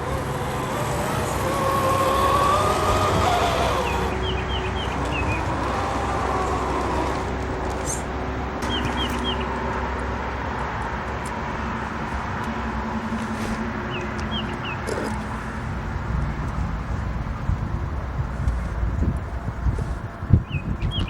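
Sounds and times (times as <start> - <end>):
bird chirping: 0.0 - 9.8, 13.9 - 15.5, 20.4 - 21.0.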